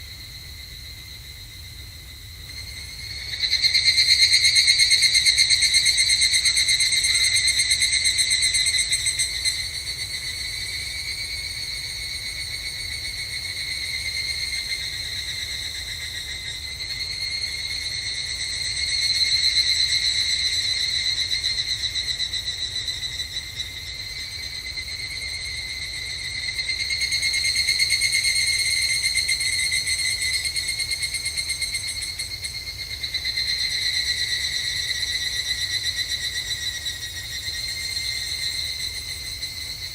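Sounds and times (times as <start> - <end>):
cicadas trilling: 0.0 - 39.9.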